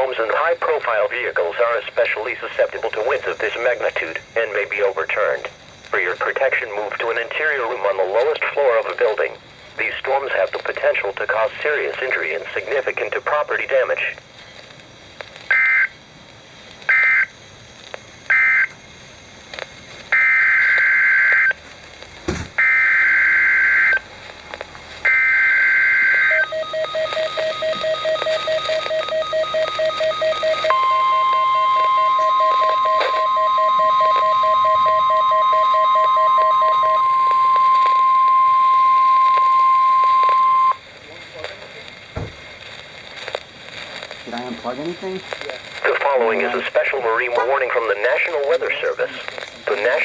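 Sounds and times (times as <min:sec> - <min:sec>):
steady single-pitch alarm tone: 0:15.5 - 0:16.0, 0:16.9 - 0:17.4, 0:18.3 - 0:18.8, 0:20.1 - 0:21.6, 0:22.6 - 0:24.1, 0:25.0 - 0:40.9
dull thump: 0:22.2 - 0:22.6, 0:42.1 - 0:42.5
data bursts: 0:22.6 - 0:24.1, 0:25.0 - 0:50.0
pulsing electronic beep: 0:26.1 - 0:40.8.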